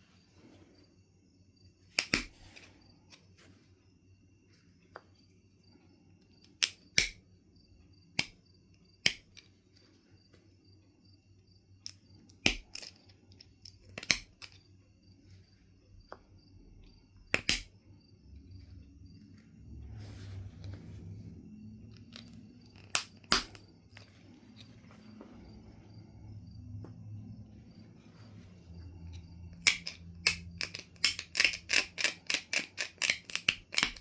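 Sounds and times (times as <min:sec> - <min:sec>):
stone knapping clicks: 0:01.9 - 0:02.4, 0:06.5 - 0:07.2, 0:08.2 - 0:08.4, 0:09.0 - 0:09.4, 0:11.8 - 0:14.6, 0:17.3 - 0:17.7, 0:22.1 - 0:24.0, 0:29.6 - 0:34.0.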